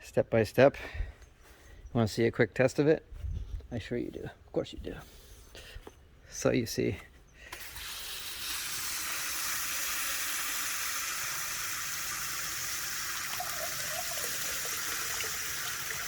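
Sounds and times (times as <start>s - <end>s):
pond waterfall pouring: 7.5s - 16.0s.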